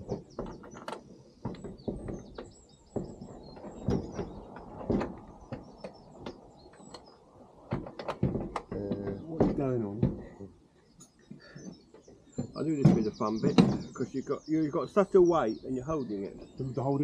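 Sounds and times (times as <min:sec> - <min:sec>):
car door knocks and clunks: 0:00.0 - 0:06.4, 0:07.7 - 0:10.4, 0:12.4 - 0:14.0
small birds chirping: 0:00.0 - 0:17.0.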